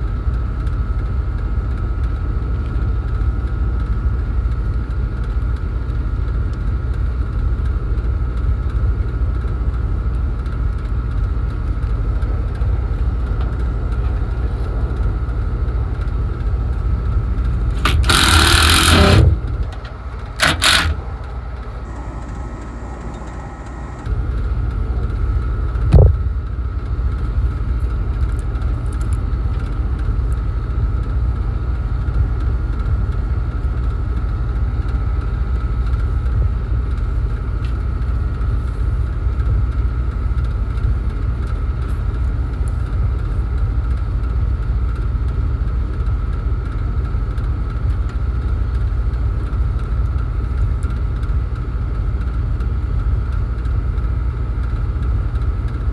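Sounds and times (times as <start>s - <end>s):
hvac unit whining: 0.0s - 55.9s.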